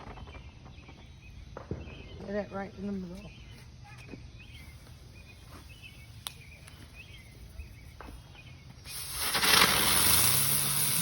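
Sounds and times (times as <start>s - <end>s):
faint chirps: 0.0s - 11.0s
ground firework hissing: 4.4s - 11.0s.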